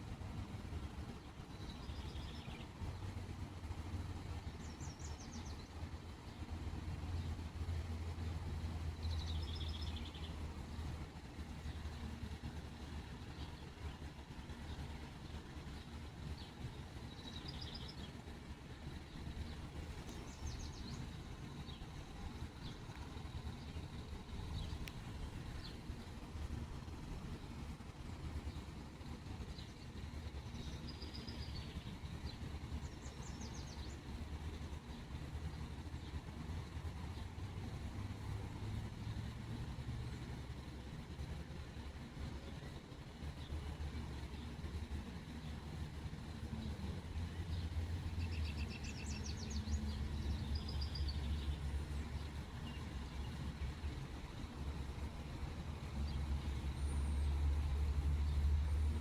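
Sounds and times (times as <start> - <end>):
steady low rumble: 0.0 - 59.0
small birds chirping: 0.8 - 8.1, 8.9 - 59.0.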